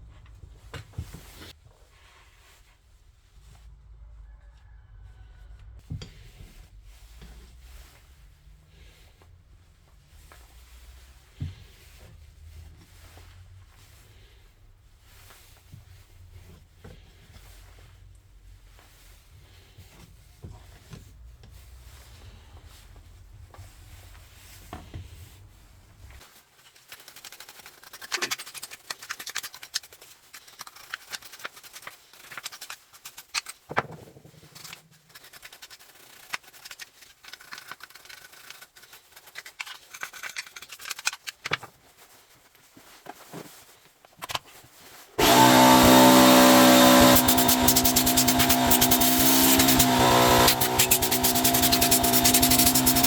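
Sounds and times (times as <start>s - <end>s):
small clicks and scrapes of parts: 26.2s - 53.0s
angle grinder whining: 45.2s - 53.0s.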